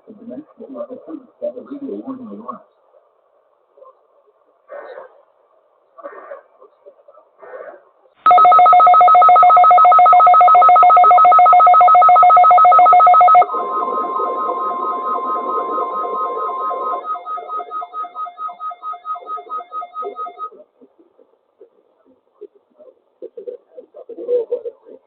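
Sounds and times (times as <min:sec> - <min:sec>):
pulsing electronic alarm: 0:08.3 - 0:20.5
steady single tone: 0:10.8 - 0:20.5.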